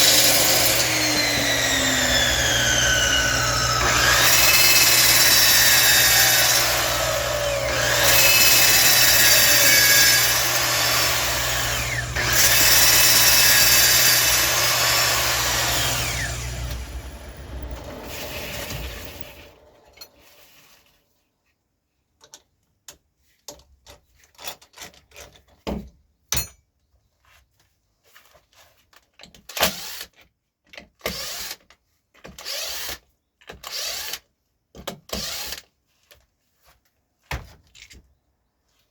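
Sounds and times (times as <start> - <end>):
wood lathe motor hum: 0.0 - 20.3
tool scraping spinning wood: 0.0 - 20.9.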